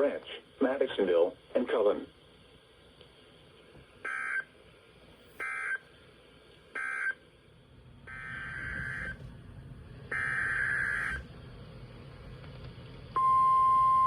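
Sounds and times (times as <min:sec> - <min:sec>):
harsh buzzing data bursts: 0:04.0 - 0:04.5, 0:05.4 - 0:05.8, 0:06.8 - 0:07.2, 0:08.0 - 0:09.2, 0:10.1 - 0:11.3
low hum: 0:07.3 - 0:14.0.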